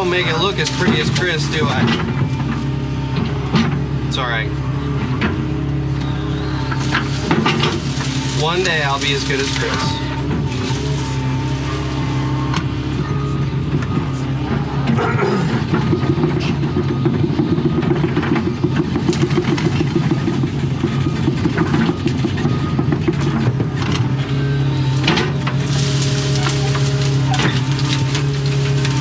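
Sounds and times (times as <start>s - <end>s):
branches cracking and snapping: 0.0s - 2.8s, 6.0s - 14.4s, 18.7s - 29.0s
excavator diesel engine running: 0.0s - 29.0s.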